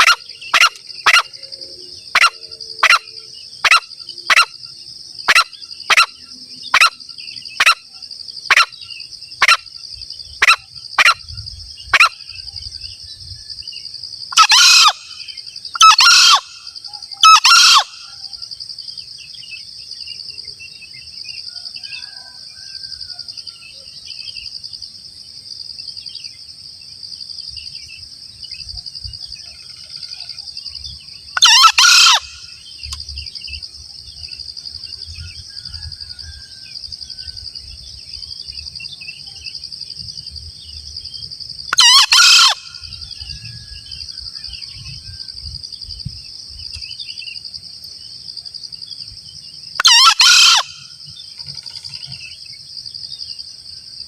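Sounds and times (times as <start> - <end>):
junglefowl calling: 0.0 - 1.5, 2.1 - 4.6, 5.3 - 7.0, 7.6 - 7.9, 8.5 - 8.8, 9.4 - 9.6, 10.4 - 11.2, 11.9 - 12.2, 14.3 - 18.3, 31.4 - 32.6, 41.7 - 43.3, 49.8 - 51.0
high-pitched insect drone: 0.0 - 26.1, 27.3 - 54.0
rooster-like crows: 21.6 - 23.6, 35.3 - 37.5.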